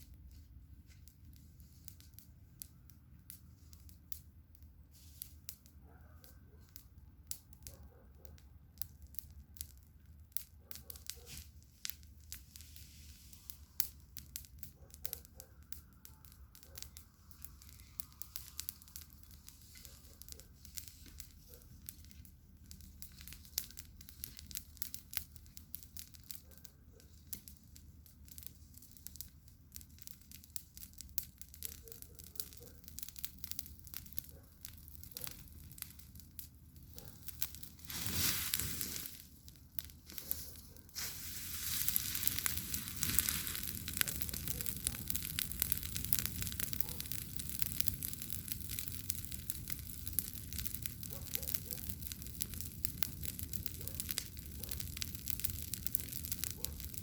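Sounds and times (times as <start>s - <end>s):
campfire crackling and popping: 0.0s - 57.0s.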